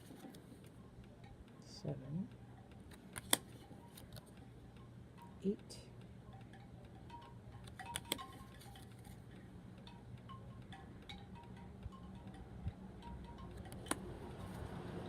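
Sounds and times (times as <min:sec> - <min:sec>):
low steady hum: 0:00.0 - 0:15.0
chimes tinkling: 0:05.2 - 0:15.0.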